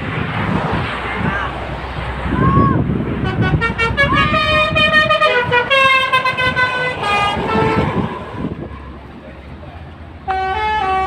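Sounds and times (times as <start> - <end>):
musical horn playing a tune: 3.2 - 8.6, 10.2 - 11.0.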